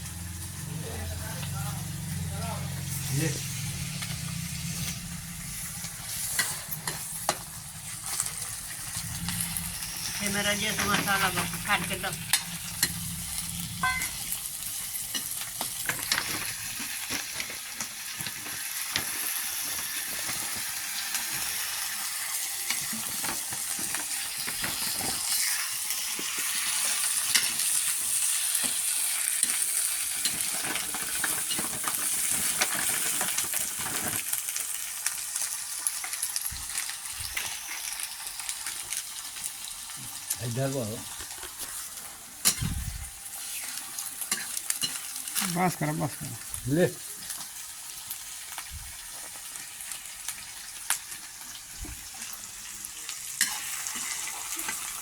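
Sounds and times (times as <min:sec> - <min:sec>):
food sizzling in a pan: 0:00.0 - 0:55.0
spoon scraping a pan: 0:05.9 - 0:09.4.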